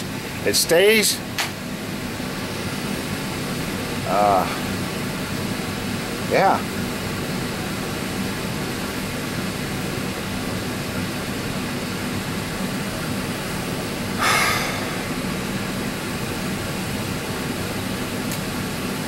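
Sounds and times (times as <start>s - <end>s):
steady mechanical hum: 0.0s - 19.0s
brief noisy burst: 14.2s - 15.2s.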